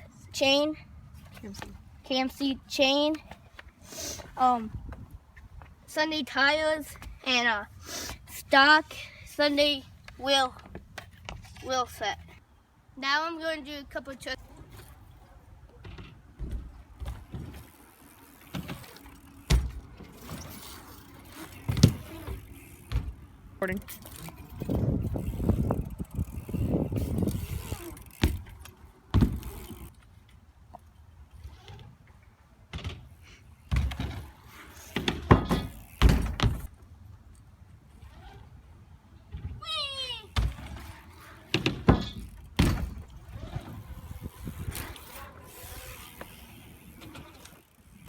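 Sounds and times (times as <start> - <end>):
bike tyres rumbling on ground: 15.8 - 29.9, 32.7 - 36.8, 40.2 - 48.0.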